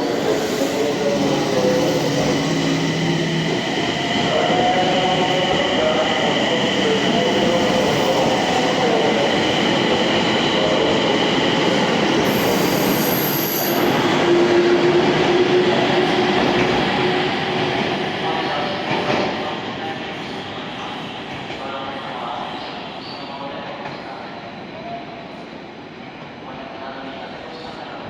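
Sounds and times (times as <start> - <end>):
high wheel squeal: 12.3 - 14.0.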